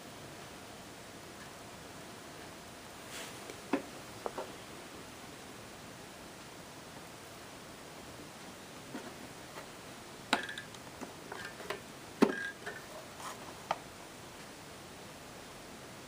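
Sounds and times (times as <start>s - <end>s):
steady low hiss: 0.0s - 16.0s
hard parts clicking and knocking: 10.3s - 12.9s.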